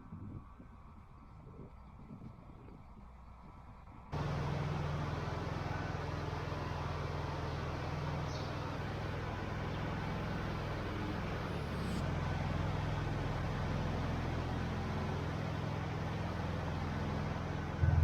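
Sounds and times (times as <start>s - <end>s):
vehicle engine running: 4.1s - 18.0s.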